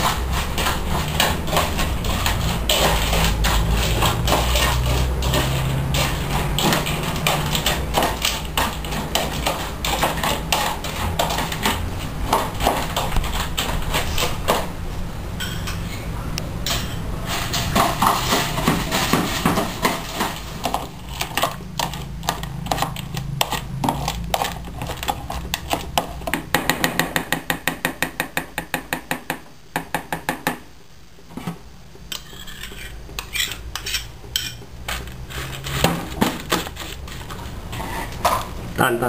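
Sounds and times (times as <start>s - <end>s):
dog food bowls clattering: 0.0s - 14.4s.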